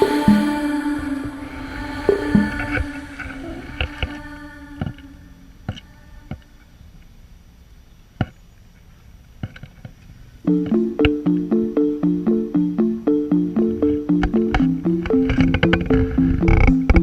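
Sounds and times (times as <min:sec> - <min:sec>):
plucked string music: 0:00.0 - 0:01.2, 0:10.4 - 0:17.0.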